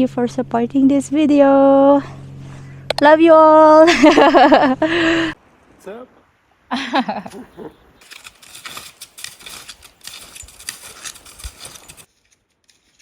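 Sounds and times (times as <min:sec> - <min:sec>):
footsteps crunching in snow: 0:08.0 - 0:13.0.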